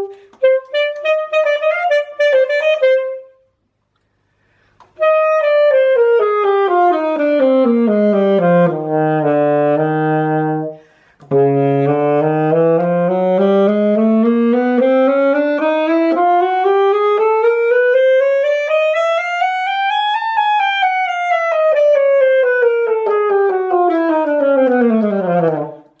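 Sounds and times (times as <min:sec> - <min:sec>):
alto saxophone playing scales: 0:00.0 - 0:03.6, 0:04.8 - 0:26.0.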